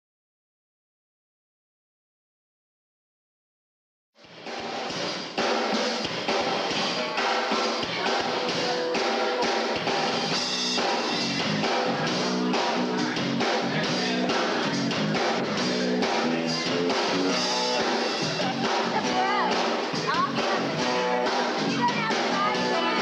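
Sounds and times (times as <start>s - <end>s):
drum kit: 4.2s - 23.0s
electric guitar: 6.0s - 23.0s.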